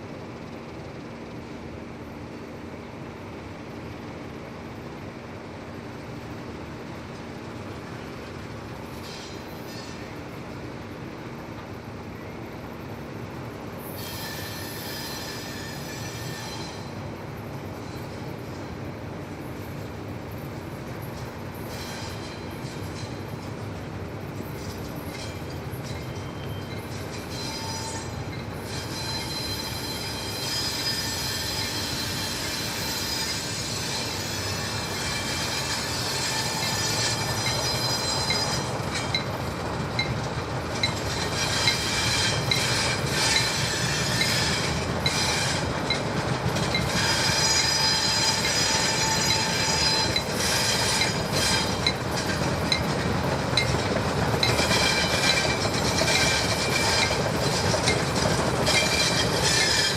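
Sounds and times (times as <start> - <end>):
steel wheels squealing on rails: 0.0 - 59.9
freight cars rolling on track: 4.8 - 59.9
wheels clacking over rail joints: 21.2 - 59.9.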